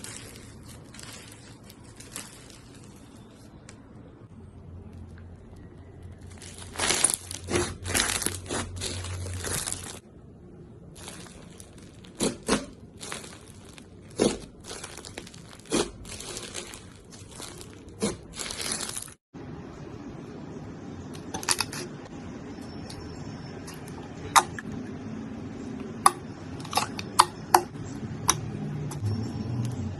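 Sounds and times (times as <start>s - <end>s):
slime squeezed crackling and popping: 4.9s - 10.0s, 10.9s - 19.2s.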